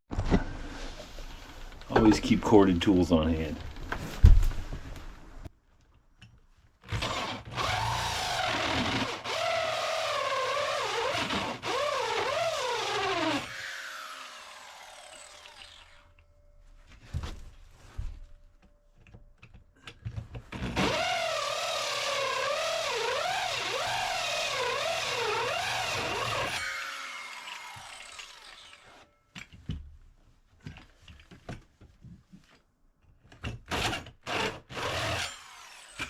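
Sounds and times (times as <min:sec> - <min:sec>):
electric drill whining: 0:06.9 - 0:16.1, 0:20.7 - 0:29.1, 0:33.7 - 0:36.0.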